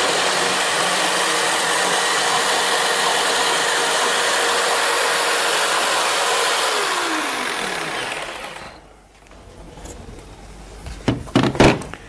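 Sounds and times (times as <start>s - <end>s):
jigsaw cutting timber: 0.0s - 8.8s
motor winding down whine: 0.0s - 8.9s.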